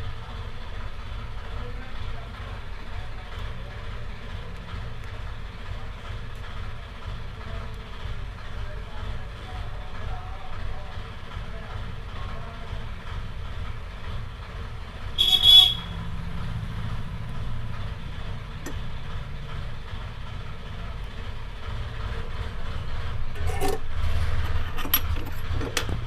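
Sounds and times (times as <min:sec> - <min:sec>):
low traffic rumble: 0:00.0 - 0:26.0
vehicle horn honking: 0:15.2 - 0:16.0.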